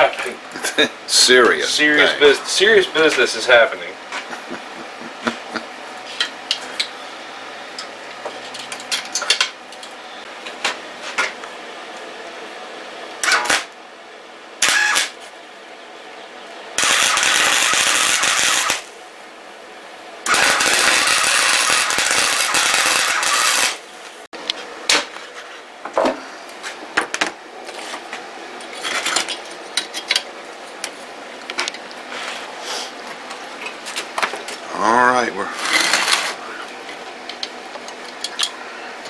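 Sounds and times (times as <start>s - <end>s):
welder arc crackling: 13.2s - 13.8s, 14.6s - 15.2s, 16.8s - 18.9s, 20.3s - 23.9s.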